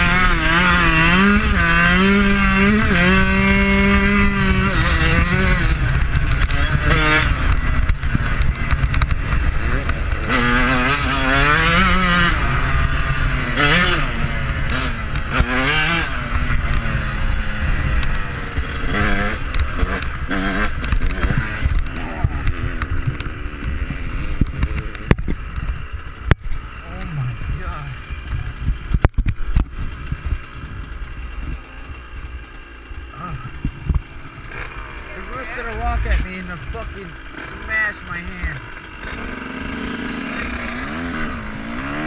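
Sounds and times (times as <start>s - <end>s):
motorbike engine revving: 0.0s - 42.0s
wind buffeting microphone: 19.6s - 32.3s.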